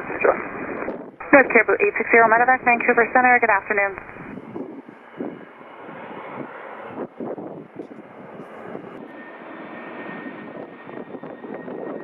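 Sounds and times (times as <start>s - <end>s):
faint steady whine: 0.0s - 5.3s
jet engine rushing: 0.0s - 12.0s.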